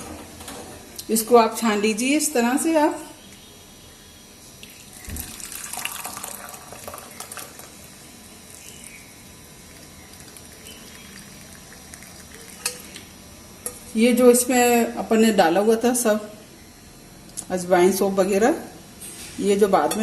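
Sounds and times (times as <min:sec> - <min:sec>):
liquid pouring through strainer: 0:04.6 - 0:07.8, 0:09.6 - 0:12.9.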